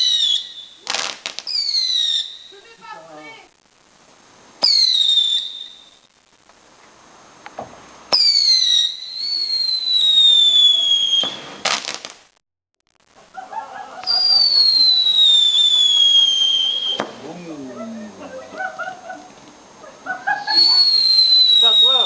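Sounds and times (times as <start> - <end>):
whistling fireworks: 0.0 - 3.4, 4.6 - 6.2, 8.1 - 12.3, 13.8 - 17.2, 20.2 - 22.0
fireworks crackling: 0.0 - 22.0.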